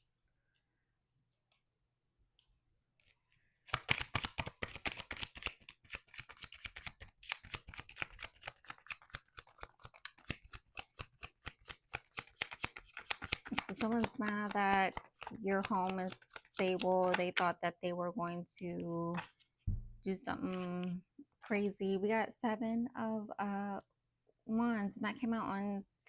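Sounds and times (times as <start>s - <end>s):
cards being shuffled: 3.0s - 17.4s.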